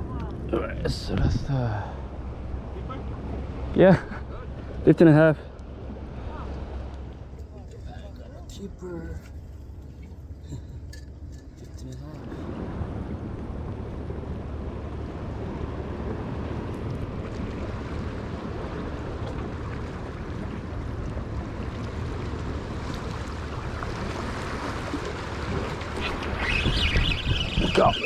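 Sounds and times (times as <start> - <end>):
wind rumbling on microphone: 0.0 - 28.0
waves washing against rocks: 17.4 - 28.0.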